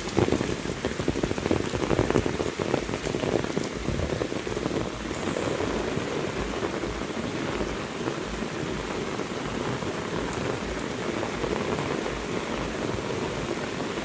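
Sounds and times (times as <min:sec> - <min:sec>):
heavy rain falling: 0:00.0 - 0:14.0
raindrops ticking: 0:00.0 - 0:14.0.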